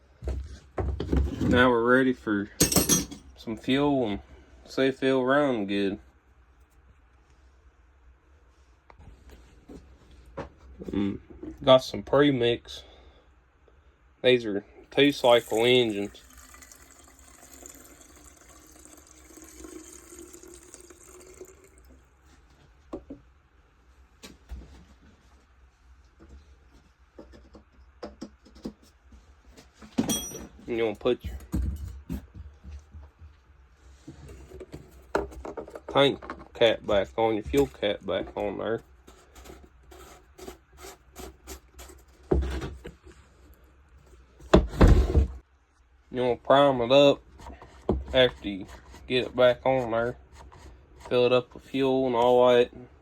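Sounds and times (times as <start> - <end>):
fuel trickling into tank: 15.0 - 22.2.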